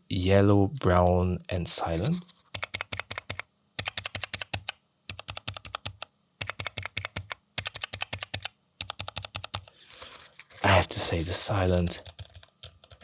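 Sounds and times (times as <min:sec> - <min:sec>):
mechanical keyboard typing: 0:02.5 - 0:09.7, 0:12.0 - 0:13.0.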